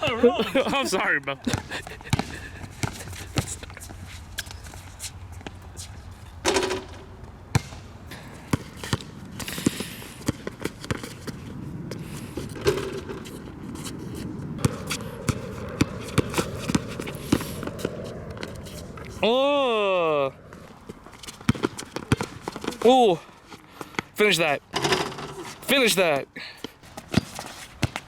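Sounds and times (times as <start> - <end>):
basketball bouncing on court: 1.5 - 3.5, 6.5 - 7.8, 8.4 - 11.1, 14.6 - 18.5, 21.4 - 22.8.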